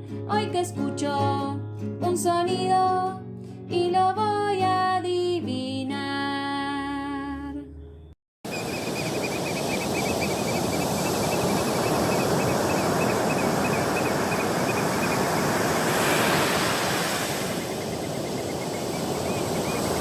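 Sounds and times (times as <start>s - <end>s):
rapid high chirping: 8.5s - 15.6s, 17.5s - 20.0s
steady rushing noise: 8.5s - 20.0s.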